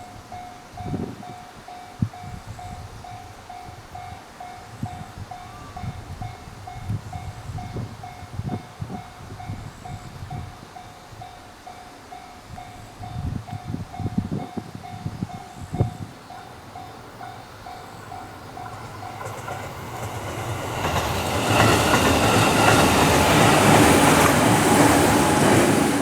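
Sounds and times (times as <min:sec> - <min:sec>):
level crossing warning bell: 0:10.8 - 0:25.6
train wheels knocking on rail joints: 0:15.8 - 0:26.0.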